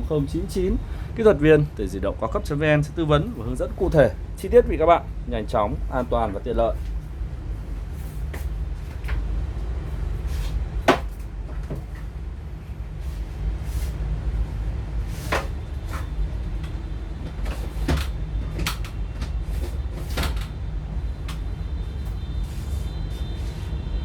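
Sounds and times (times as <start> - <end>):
steady low rumble: 0.0 - 24.0.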